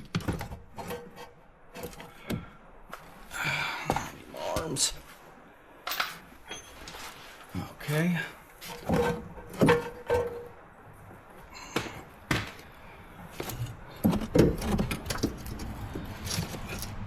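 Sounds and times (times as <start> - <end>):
metal tools clinking and knocking: 5.8 - 7.0.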